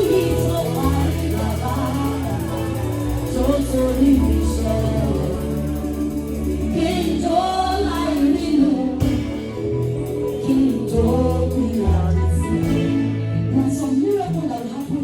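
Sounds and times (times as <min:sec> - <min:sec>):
choir singing gospel: 0:00.0 - 0:15.0
live band with beat and bass: 0:00.0 - 0:15.0.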